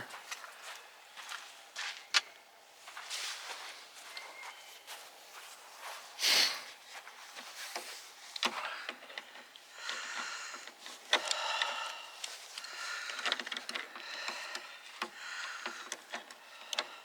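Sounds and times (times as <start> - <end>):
person sniffing: 6.2 - 6.7.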